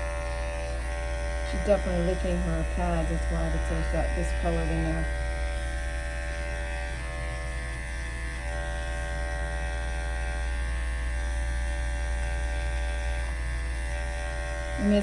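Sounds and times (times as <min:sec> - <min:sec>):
electric clippers buzzing: 0:00.0 - 0:15.0.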